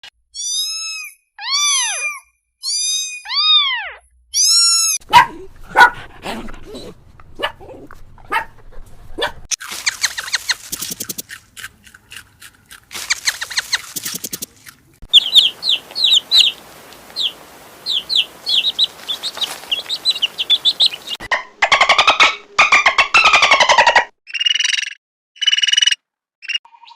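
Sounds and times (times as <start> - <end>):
quick high chirps: 9.6 - 11.4, 12.9 - 16.6
rising and falling animal calls: 15.1 - 24.1.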